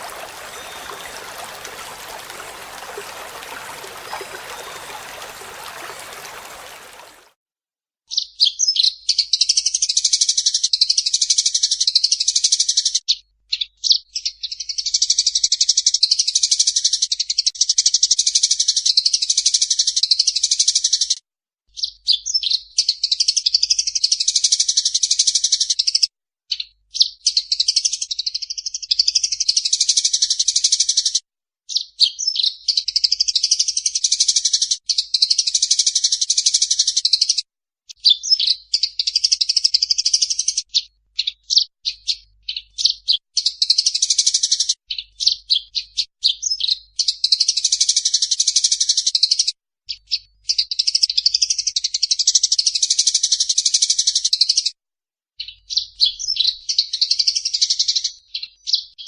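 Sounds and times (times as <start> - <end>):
sparrows chirping: 0.0 - 7.2
rushing water noise: 0.0 - 7.3.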